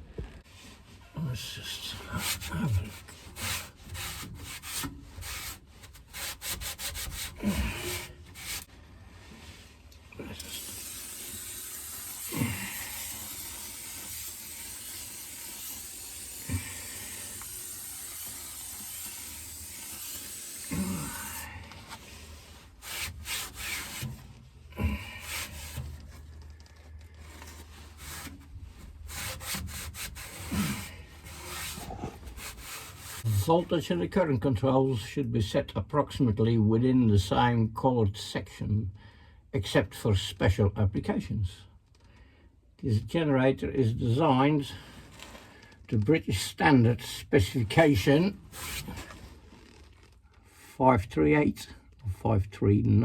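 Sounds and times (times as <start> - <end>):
hand rubbing strokes: 0.4 - 26.4, 27.2 - 33.5, 48.4 - 49.9.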